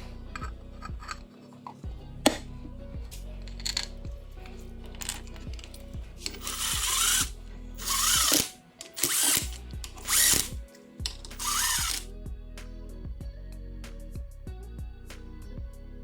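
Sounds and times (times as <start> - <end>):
cordless power drill bursts: 6.2 - 12.1.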